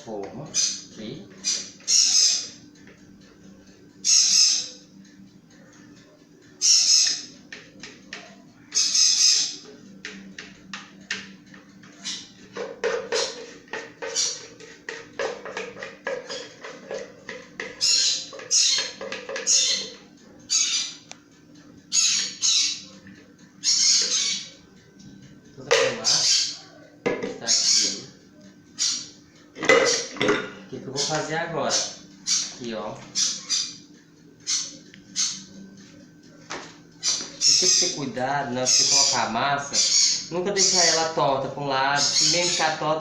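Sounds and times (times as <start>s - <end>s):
bird squawking harshly: 0.5s - 2.6s, 4.0s - 4.8s, 6.6s - 7.3s, 8.7s - 9.6s, 14.1s - 14.5s, 17.8s - 21.0s, 21.9s - 22.8s, 23.6s - 24.5s, 25.9s - 26.6s, 27.5s - 28.0s, 28.8s - 29.2s, 31.0s - 33.8s, 37.0s - 38.0s, 38.7s - 41.0s.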